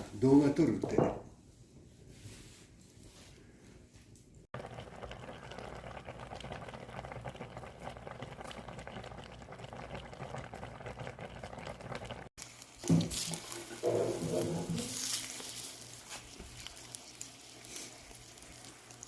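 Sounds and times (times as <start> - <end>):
food bubbling and crackling on fire: 4.5 - 19.0
sizzling: 4.6 - 19.0.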